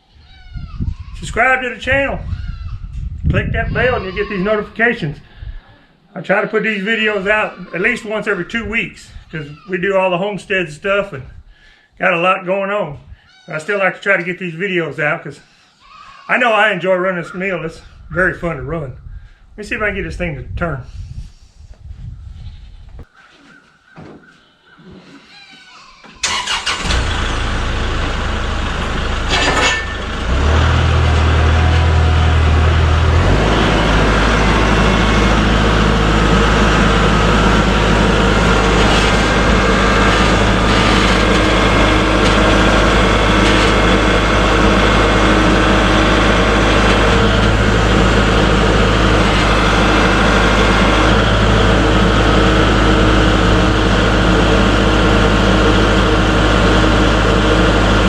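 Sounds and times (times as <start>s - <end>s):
tractor diesel engine running: 26.2s - 58.0s.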